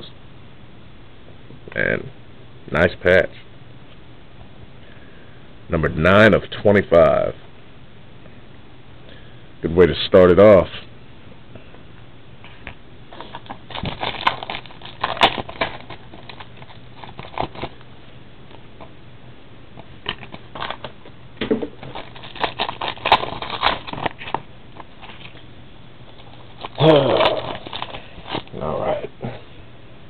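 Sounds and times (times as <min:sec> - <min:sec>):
wrappers crinkling: 0:13.1 - 0:17.8, 0:20.0 - 0:21.1, 0:21.7 - 0:25.4, 0:26.0 - 0:28.7.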